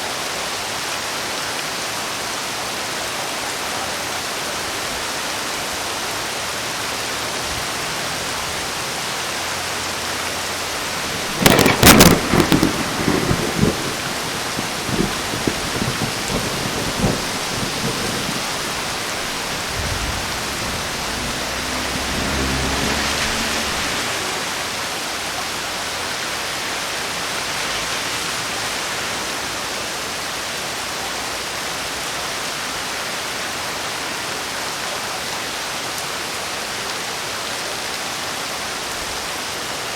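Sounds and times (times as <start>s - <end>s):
heavy rain falling: 0.0s - 39.9s
low rumble of thunder: 10.8s - 24.3s
thunderclap: 10.8s - 24.7s.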